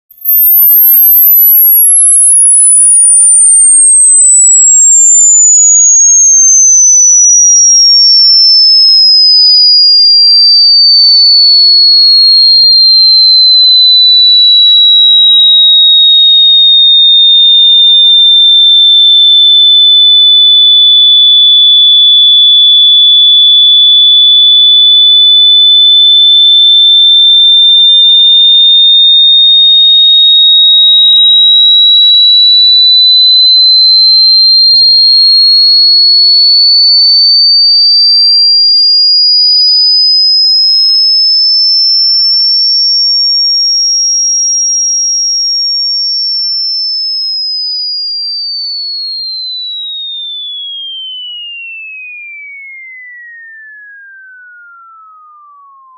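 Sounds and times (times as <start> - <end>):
high-pitched electronic beep tone: 0.1 - 17.6.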